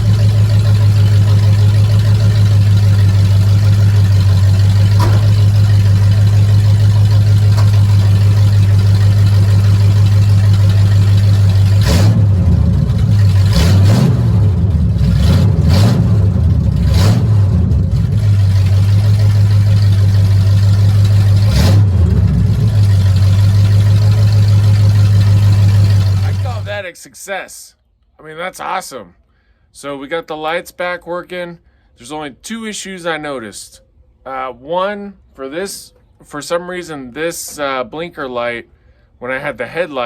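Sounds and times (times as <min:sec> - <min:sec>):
truck engine idling and revving: 0:00.0 - 0:26.8.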